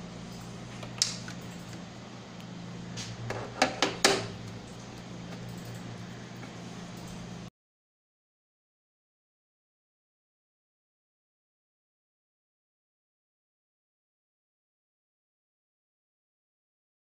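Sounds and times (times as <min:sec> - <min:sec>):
low electrical hum: 0:00.0 - 0:07.5.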